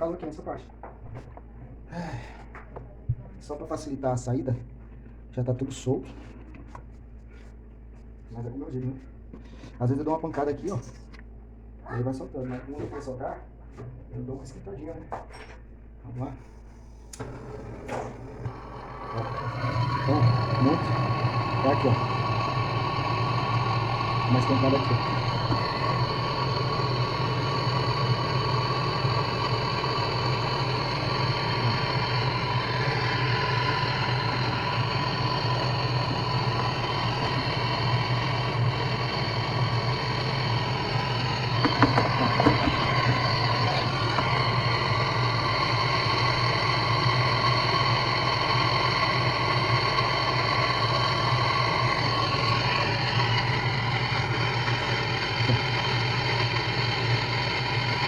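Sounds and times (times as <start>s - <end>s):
gas blowtorch burning: 17.1s - 58.0s.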